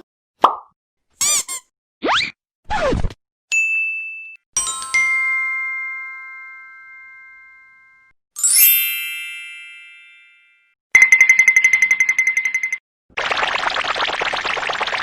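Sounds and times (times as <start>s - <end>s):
bell-like chime: 3.5s - 12.8s
sparkling glittery chime: 8.4s - 10.7s.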